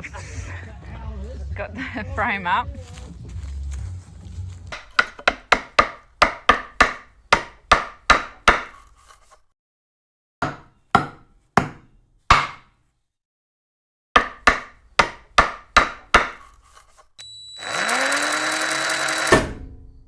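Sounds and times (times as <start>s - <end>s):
motor starting up: 17.2s - 19.4s.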